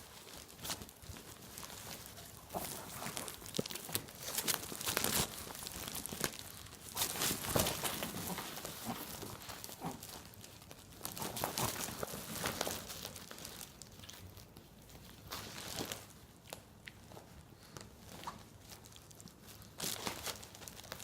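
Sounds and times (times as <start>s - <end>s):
sack rustling and crinkling: 0.0s - 13.9s.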